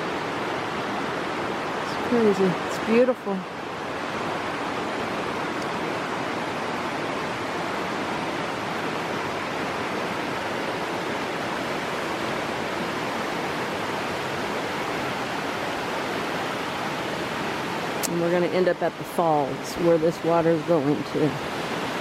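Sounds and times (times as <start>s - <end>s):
creek water rushing: 0.0s - 22.0s.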